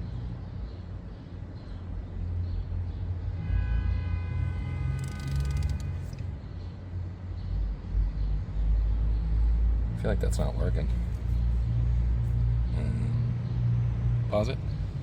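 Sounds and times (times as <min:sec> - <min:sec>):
torque wrench ratchet clicks: 0:05.0 - 0:05.9.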